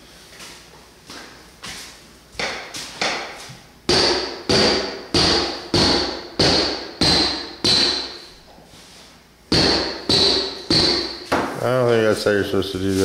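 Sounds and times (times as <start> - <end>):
hammer striking wood flooring: 2.4 - 8.3, 9.5 - 11.5.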